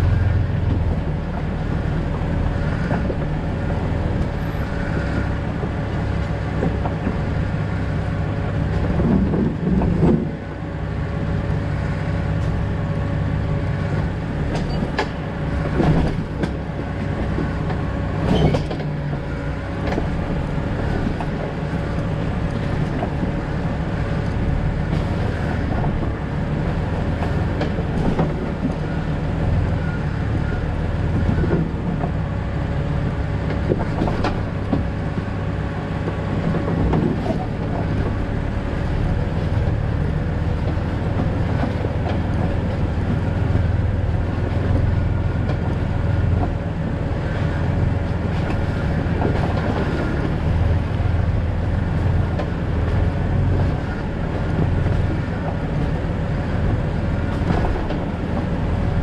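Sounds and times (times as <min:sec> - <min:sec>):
engine and road rumble: 0:00.0 - 0:59.0
knocks and rattles from bumps: 0:08.6 - 0:10.4, 0:14.0 - 0:23.4, 0:33.4 - 0:35.2.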